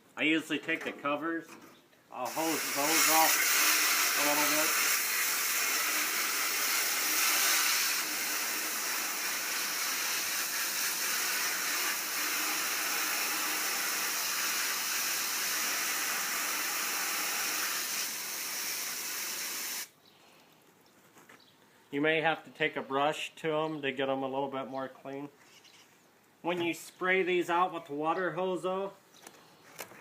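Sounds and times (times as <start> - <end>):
hose spraying water on plastic: 2.2 - 19.9.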